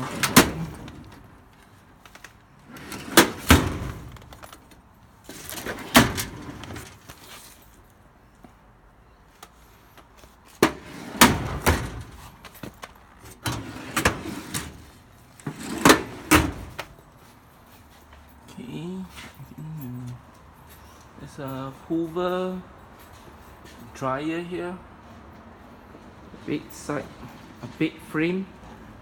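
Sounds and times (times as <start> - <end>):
drawers and doors shutting: 0.0 - 1.5, 2.1 - 7.4, 10.6 - 17.0.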